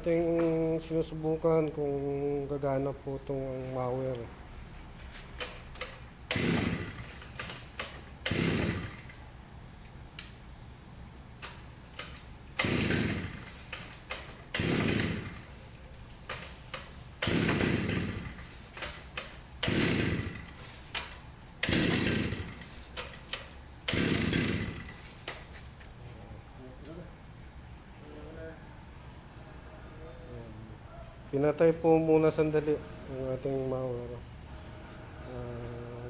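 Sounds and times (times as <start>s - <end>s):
small engine pull-start cranking: 5.4s - 9.2s, 11.4s - 25.4s.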